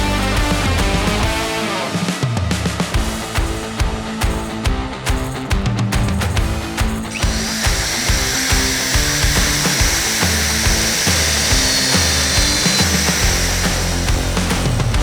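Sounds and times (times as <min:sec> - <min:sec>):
rock music with steady beat: 0:00.0 - 0:15.0
electric drill running: 0:07.1 - 0:15.0.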